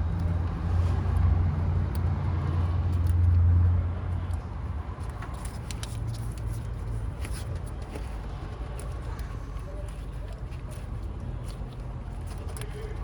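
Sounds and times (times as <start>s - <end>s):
passing motor vehicle rumble: 0.0s - 13.0s.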